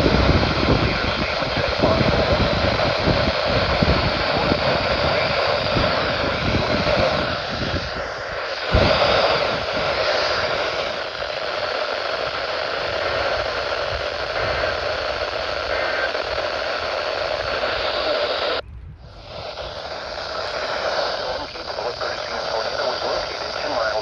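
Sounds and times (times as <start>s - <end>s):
radio static hiss: 0.0s - 24.0s.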